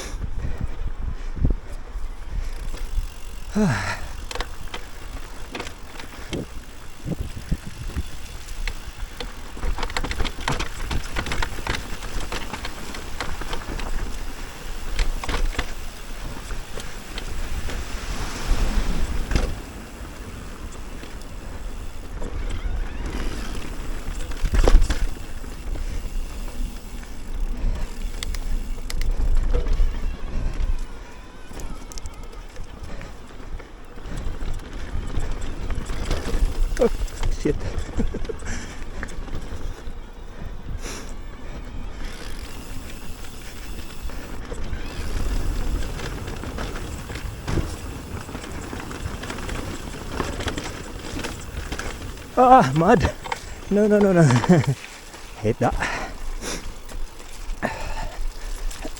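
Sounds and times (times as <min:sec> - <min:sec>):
wind buffeting microphone: 0:00.0 - 0:31.8
bike clattering over rough trail: 0:00.0 - 0:58.9.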